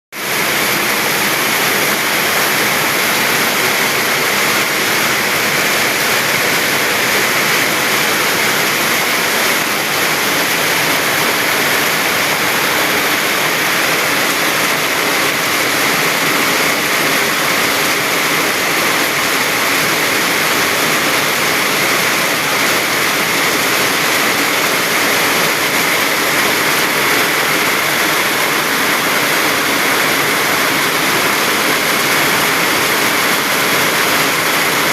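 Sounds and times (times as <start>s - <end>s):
heavy rain pouring: 0.2s - 34.9s.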